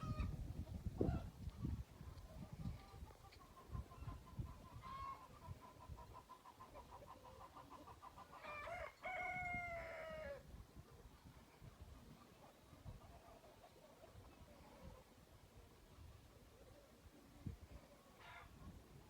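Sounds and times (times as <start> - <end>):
rooster crowing: 8.4 - 10.4.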